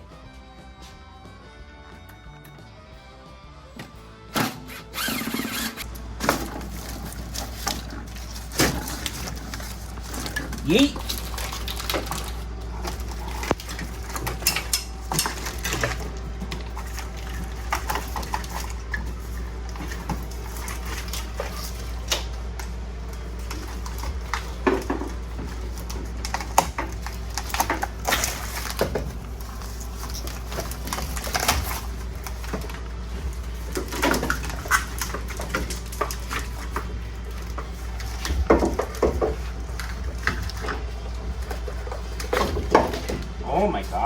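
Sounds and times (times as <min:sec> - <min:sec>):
steady low hum: 0:00.0 - 0:44.0
wiring connectors clicking and rattling: 0:05.1 - 0:43.3.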